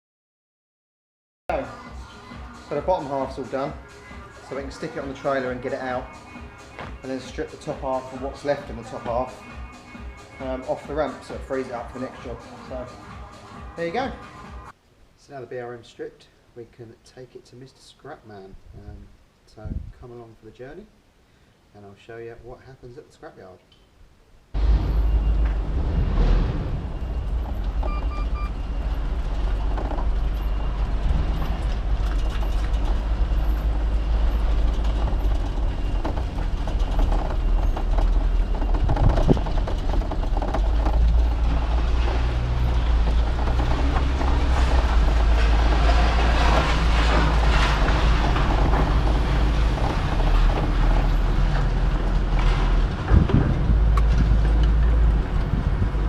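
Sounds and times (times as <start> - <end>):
vehicle engine and road rumble: 24.4 - 56.0
rattles and knocks: 24.6 - 55.6.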